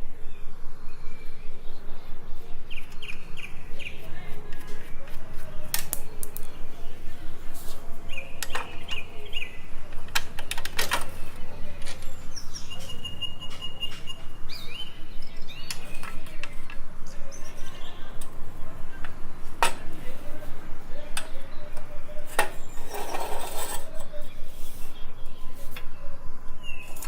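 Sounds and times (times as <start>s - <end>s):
small birds chirping: 0.0s - 27.0s
sharp clicks and knocks: 9.9s - 12.2s.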